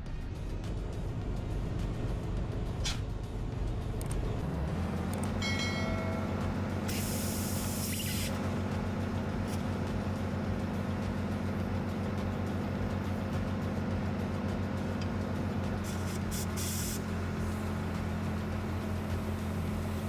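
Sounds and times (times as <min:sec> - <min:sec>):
steady low drone: 0:00.0 - 0:20.0
compressed air hiss: 0:06.9 - 0:08.4, 0:15.8 - 0:17.2.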